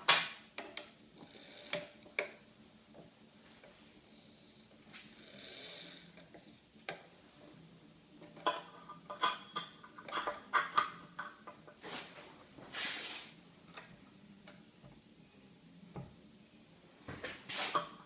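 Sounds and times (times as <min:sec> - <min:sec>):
metal tools clinking and rattling: 0:08.4 - 0:11.5
short hiss: 0:12.7 - 0:13.4.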